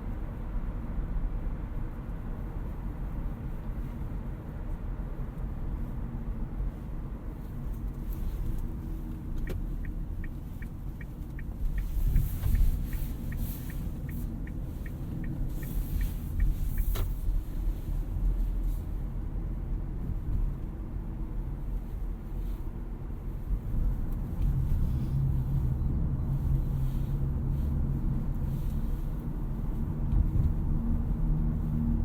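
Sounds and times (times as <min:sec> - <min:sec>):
car cabin road noise: 0:00.0 - 0:32.0
turn indicator ticking: 0:09.3 - 0:17.4.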